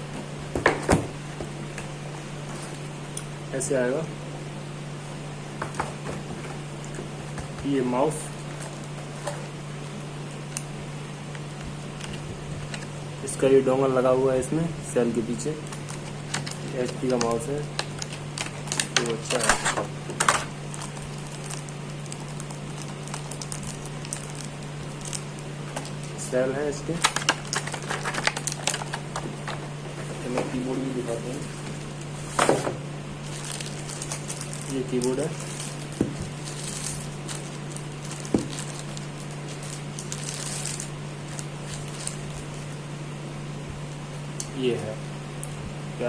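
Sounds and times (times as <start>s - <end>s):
steady low hum: 0.0s - 46.0s
packaging crinkling: 10.0s - 13.3s, 15.3s - 26.2s, 26.9s - 42.8s.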